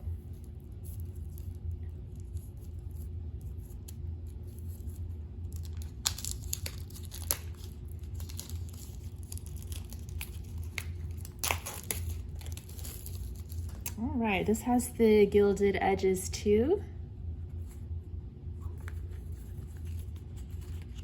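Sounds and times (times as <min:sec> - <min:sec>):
steady low hum: 0:00.0 - 0:21.0
packaging crinkling and tearing: 0:00.3 - 0:14.0, 0:18.8 - 0:21.0.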